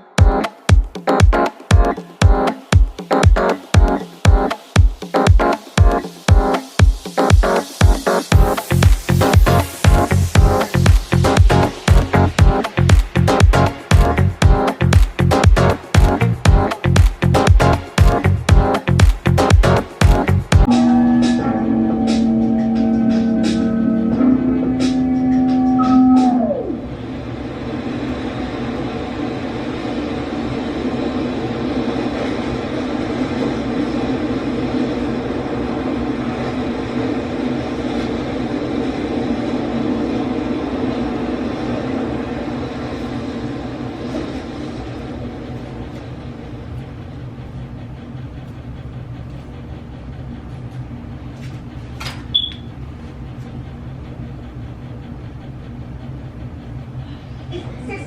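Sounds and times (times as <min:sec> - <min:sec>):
rush of noise: 0:04.0 - 0:46.4
blower running: 0:05.8 - 0:30.2
low mechanical hum: 0:08.3 - 0:58.0
short high beep: 0:20.7 - 0:26.7, 0:52.4 - 0:52.7.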